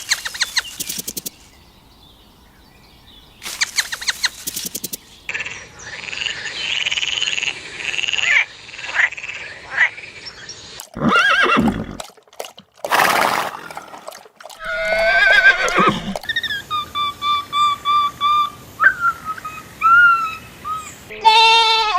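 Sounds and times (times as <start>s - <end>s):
horse whinnying: 10.9s - 12.0s, 14.6s - 16.3s.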